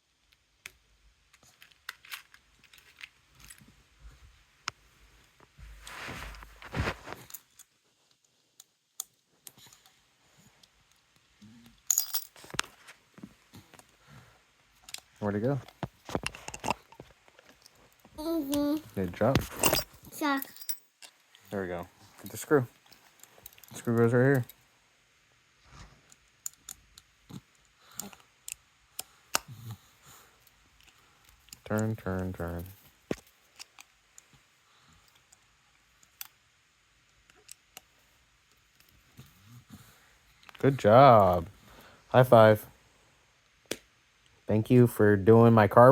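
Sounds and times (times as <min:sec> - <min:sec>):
rustle: 0:05.6 - 0:07.6
small metal parts clinking: 0:11.7 - 0:12.7, 0:19.4 - 0:21.1.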